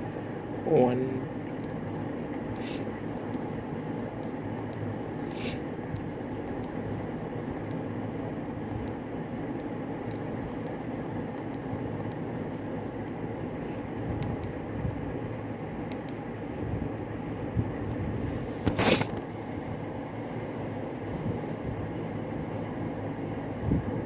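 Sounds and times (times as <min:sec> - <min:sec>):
fan hum and hiss: 0:00.0 - 0:24.0
short hisses: 0:05.3 - 0:05.6.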